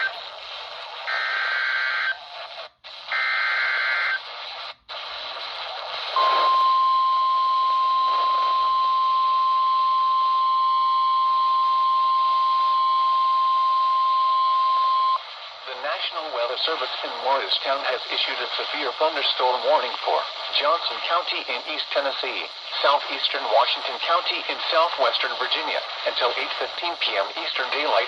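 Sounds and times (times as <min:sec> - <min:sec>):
steady radio alert tone: 0:00.0 - 0:00.3, 0:06.0 - 0:28.0
radio static hiss: 0:00.0 - 0:28.0.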